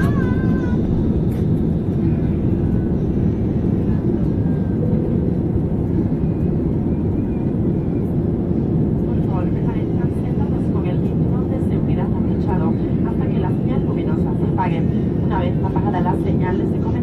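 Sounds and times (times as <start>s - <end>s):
jet engine and airflow rush: 0.0s - 17.0s.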